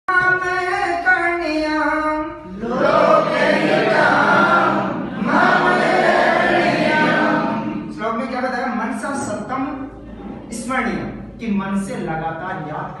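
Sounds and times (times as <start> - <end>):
group singing in unison: 2.4 - 7.9.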